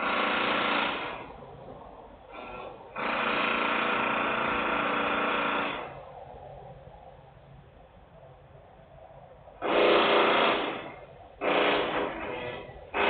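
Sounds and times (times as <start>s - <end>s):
buzzing mechanical rattle: 0.0s - 1.5s, 2.3s - 6.1s, 9.6s - 13.0s.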